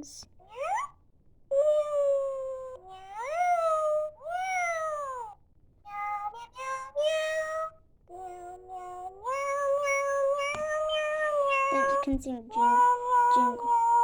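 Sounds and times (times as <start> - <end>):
toy cat electronic meows: 0.4 - 12.0, 12.6 - 14.0.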